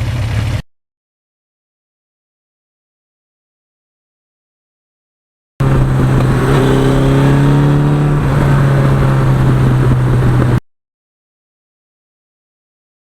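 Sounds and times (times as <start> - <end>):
motorcycle engine running: 5.6 - 10.6.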